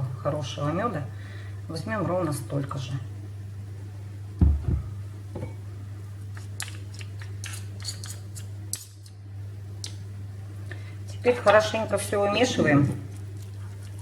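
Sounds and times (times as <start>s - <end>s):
low electrical hum: 0.0s - 14.0s
dull thump: 4.4s - 5.5s.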